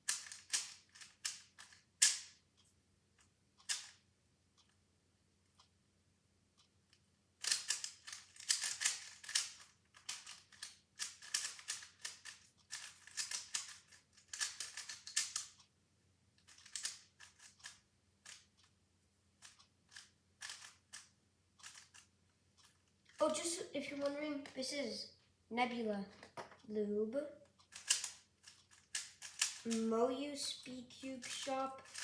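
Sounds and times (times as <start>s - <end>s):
speed cube clicking turns: 0.0s - 2.4s, 3.2s - 4.0s, 7.4s - 15.7s, 16.4s - 18.8s, 19.4s - 24.6s, 27.6s - 32.0s.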